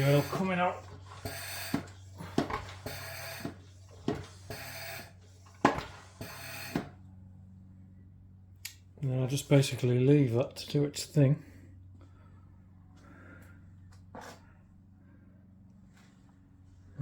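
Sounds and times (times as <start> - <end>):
hand pump strokes with air hiss: 0.0 - 6.9.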